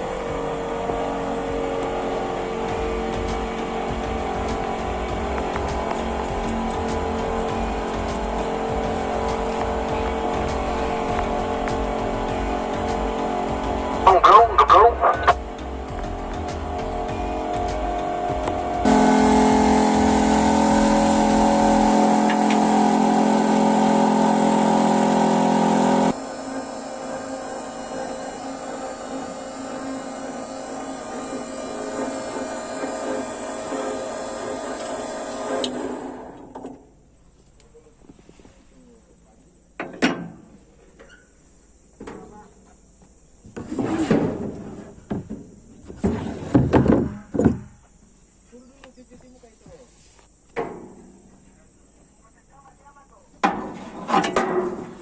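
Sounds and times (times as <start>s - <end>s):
heavy engine running: 0.0s - 36.6s
high insect drone: 0.0s - 55.0s.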